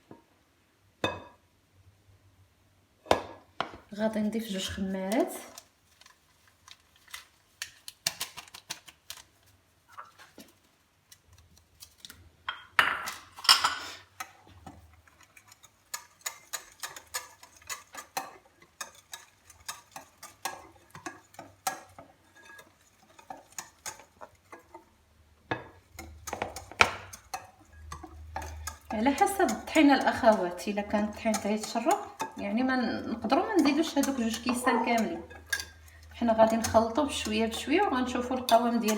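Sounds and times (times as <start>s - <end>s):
utensils clicking in mixing bowl: 7.6s - 9.3s, 14.2s - 24.8s, 25.8s - 38.9s.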